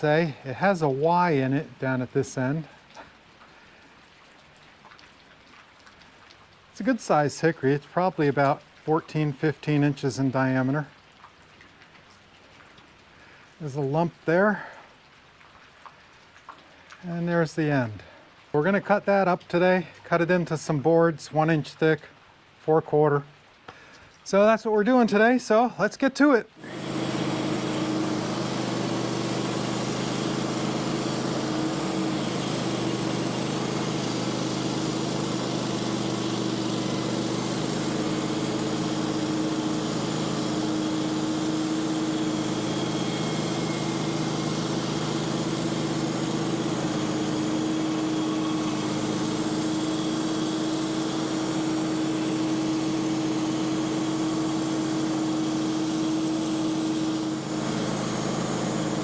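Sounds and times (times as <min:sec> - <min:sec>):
sawmill engine running: 0:00.0 - 0:02.7, 0:26.5 - 0:59.0.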